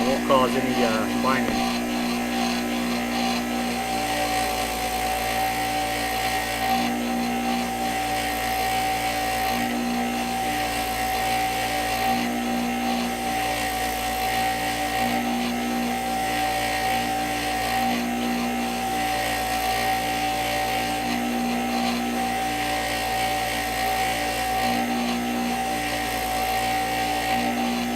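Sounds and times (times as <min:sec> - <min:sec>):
wire wheel brushing metal: 0:00.0 - 0:06.6
bench grinder motor whine: 0:00.0 - 0:27.9.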